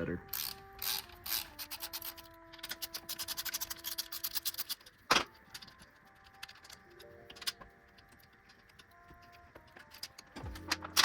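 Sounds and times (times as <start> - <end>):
socket ratchet clicking: 0.2 - 11.0.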